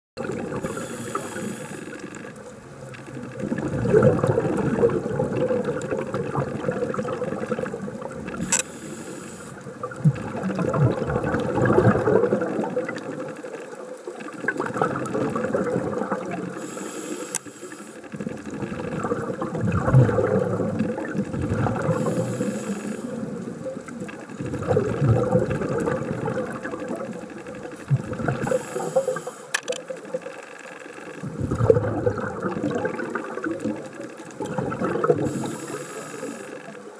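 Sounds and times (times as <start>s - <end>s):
crackling rush of bubbles: 0.2s - 36.9s
diver breathing through regulator: 0.5s - 2.3s, 8.3s - 9.7s, 16.5s - 18.2s, 21.8s - 23.3s, 28.2s - 29.7s, 35.0s - 36.8s.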